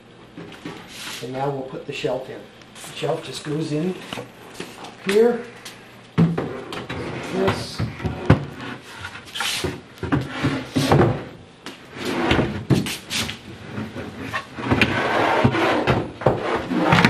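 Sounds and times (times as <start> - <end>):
shelf scraping cabinet sides: 6.4 - 17.0.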